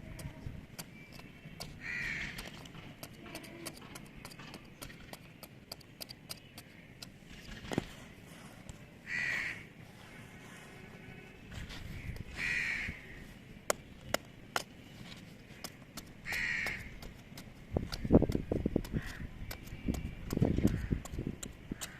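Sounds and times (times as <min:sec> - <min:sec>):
crow cawing: 0:01.8 - 0:02.4, 0:09.0 - 0:09.7, 0:12.3 - 0:13.1, 0:16.2 - 0:16.9, 0:18.9 - 0:19.3.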